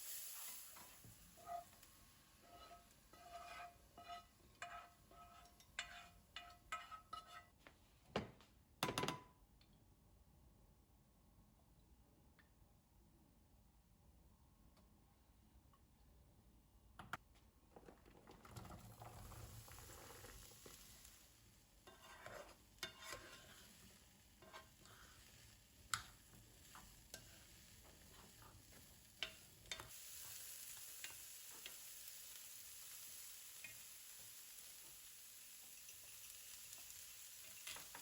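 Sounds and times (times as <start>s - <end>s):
food sizzling in a pan: 0.0s - 7.5s, 18.6s - 38.0s.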